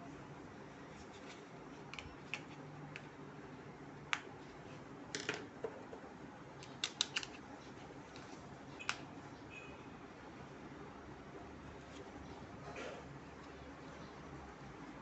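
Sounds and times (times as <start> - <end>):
plastic parts clicking and tapping: 5.1 - 6.0, 6.6 - 7.4.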